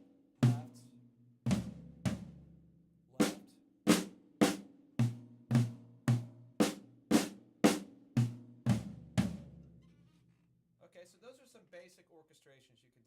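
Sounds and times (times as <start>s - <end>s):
drum strokes on snare and toms: 0.0s - 0.9s, 1.5s - 2.4s, 3.2s - 9.6s.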